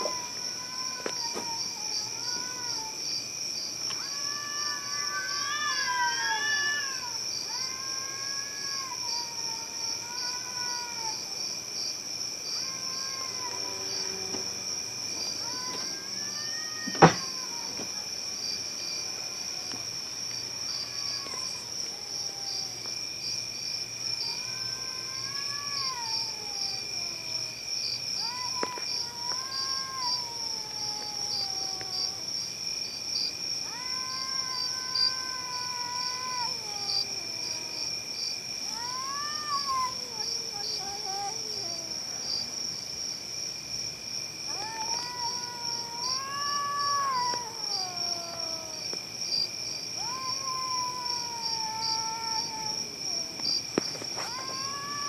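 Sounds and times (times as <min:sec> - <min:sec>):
cats yowling: 0:00.0 - 0:03.1, 0:03.9 - 0:11.4, 0:12.5 - 0:14.4, 0:15.2 - 0:18.1, 0:20.6 - 0:22.9, 0:24.1 - 0:27.5, 0:28.2 - 0:32.3, 0:33.6 - 0:38.0, 0:38.6 - 0:42.3, 0:44.5 - 0:49.0, 0:49.9 - 0:55.0.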